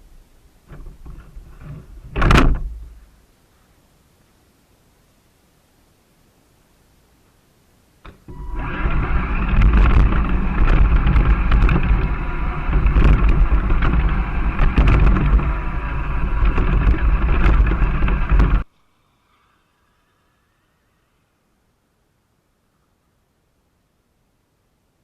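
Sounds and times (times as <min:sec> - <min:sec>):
wheels churning through sand: 0:08.2 - 0:19.6
wind rumble on microphone: 0:08.3 - 0:18.7.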